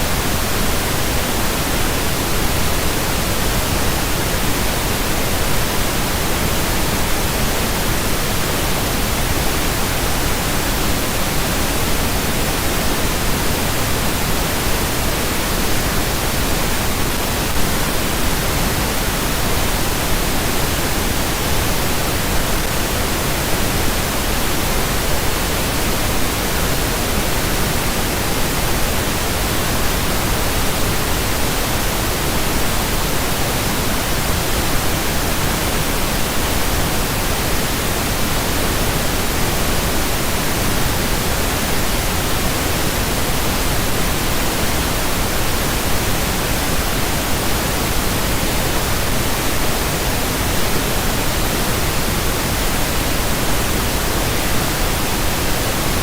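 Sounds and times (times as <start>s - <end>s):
pink noise hiss: 0.0s - 56.0s.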